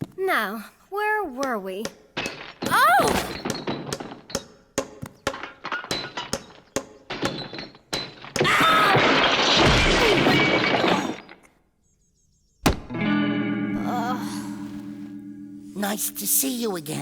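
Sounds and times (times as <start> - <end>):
long crashing and breaking: 2.2 - 4.6, 5.2 - 11.6.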